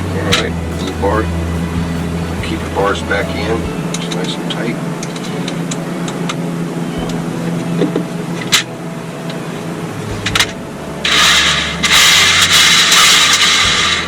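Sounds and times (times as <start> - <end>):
mechanical hum: 0.0 - 14.0
loud rushing noise: 9.6 - 14.0.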